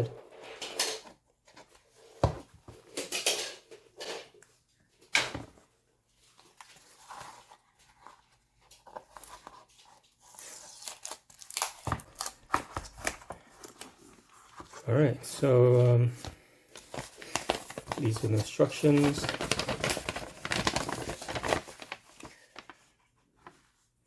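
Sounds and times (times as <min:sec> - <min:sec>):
packaging rustling: 0:06.3 - 0:23.6
packaging tearing: 0:10.2 - 0:13.2, 0:17.0 - 0:22.4.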